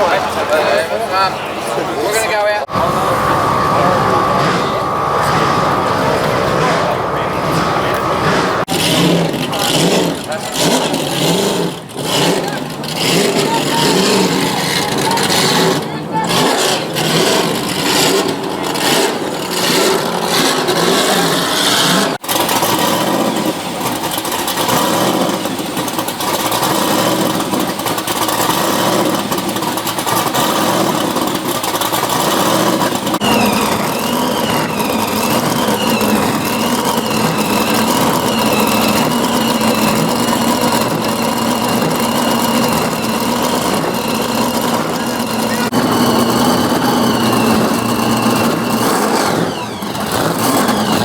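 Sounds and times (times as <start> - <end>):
car engine revving hard: 0.0 - 51.0
wavering high squeal: 2.7 - 8.7, 33.2 - 51.0.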